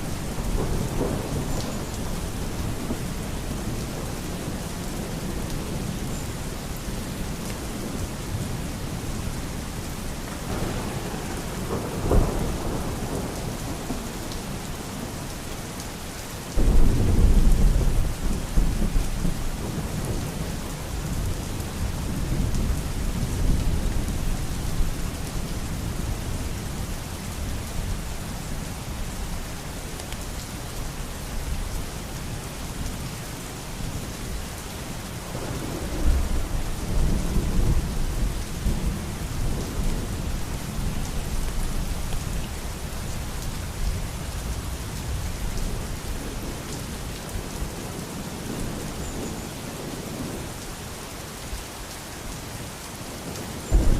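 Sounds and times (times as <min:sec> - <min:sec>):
steady rain falling: 0:00.0 - 0:53.9
rolling thunder: 0:10.5 - 0:14.0, 0:16.6 - 0:20.2.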